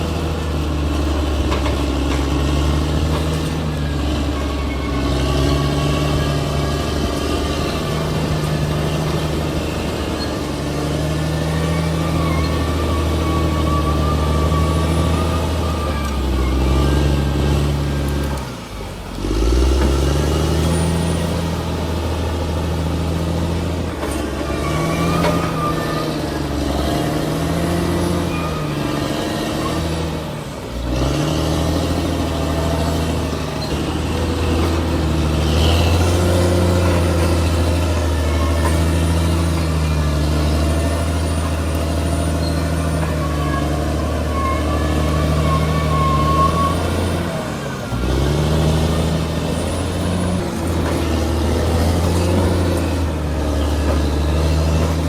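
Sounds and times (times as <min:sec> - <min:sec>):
bulldozer diesel engine under load: 0:00.0 - 0:55.0.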